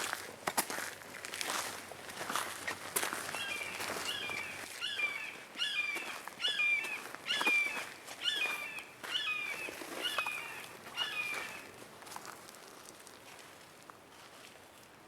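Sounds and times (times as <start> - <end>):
songbird chirping: 3.0 - 11.8.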